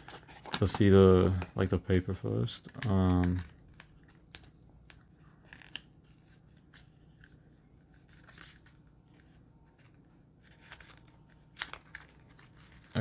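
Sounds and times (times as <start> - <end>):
paper and cardboard rustling: 5.2 - 13.0.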